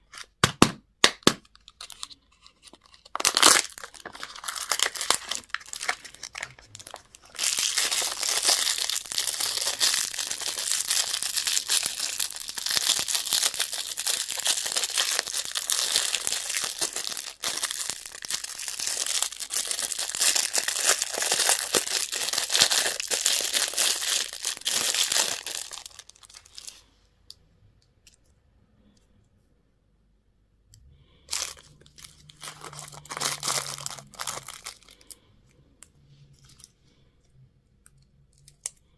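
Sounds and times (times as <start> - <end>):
candy wrappers crinkling: 1.2 - 26.8, 31.2 - 35.2.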